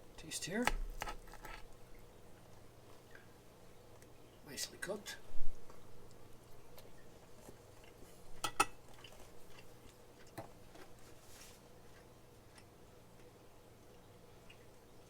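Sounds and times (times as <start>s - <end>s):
cutlery clicking against a plate: 8.4s - 8.8s.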